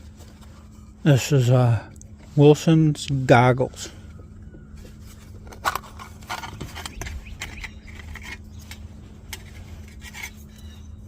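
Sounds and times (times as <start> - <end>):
low hum: 0.0 - 11.0
metal case clicking and rattling: 5.3 - 10.5.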